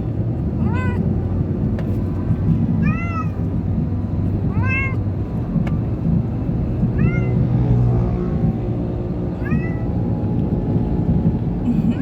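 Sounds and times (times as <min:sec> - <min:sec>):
steady low rumble: 0:00.0 - 0:12.0
cat meowing: 0:02.8 - 0:03.4, 0:04.5 - 0:05.0, 0:07.0 - 0:07.4, 0:09.4 - 0:09.9.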